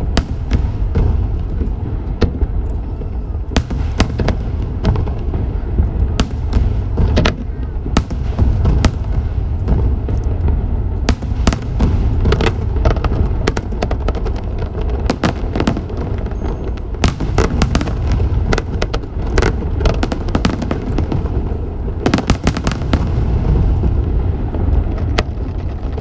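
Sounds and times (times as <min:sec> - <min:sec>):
fireworks cracks and bangs: 0:00.0 - 0:26.0
low rumble: 0:00.0 - 0:26.0.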